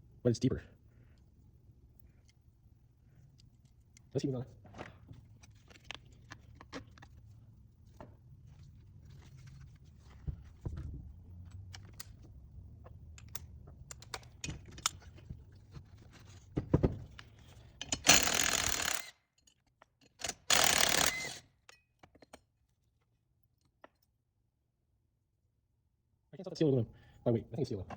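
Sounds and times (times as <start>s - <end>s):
metal parts and tools clattering: 13.2s - 20.3s.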